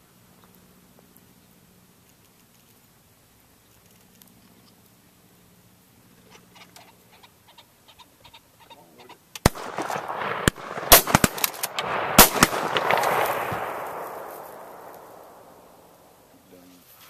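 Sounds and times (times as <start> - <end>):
gunshot echo rumble: 9.4 - 16.2
shotgun shots: 9.4 - 16.2.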